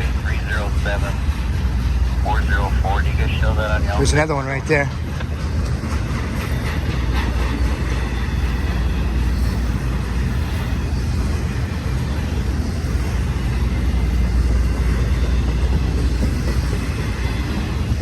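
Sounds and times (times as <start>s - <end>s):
freight train cars rolling past: 0.0s - 18.0s.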